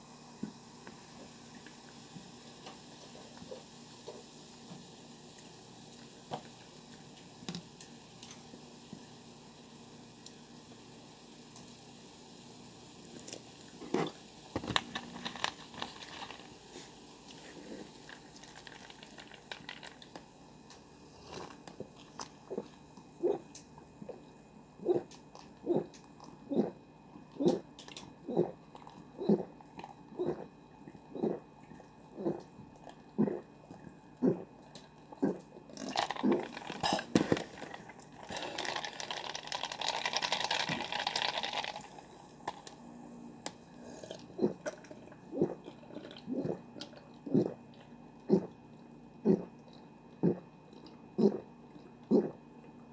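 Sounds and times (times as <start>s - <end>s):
person gulping drink: 13.8s - 16.6s, 17.3s - 20.2s, 21.2s - 42.6s, 43.8s - 52.7s.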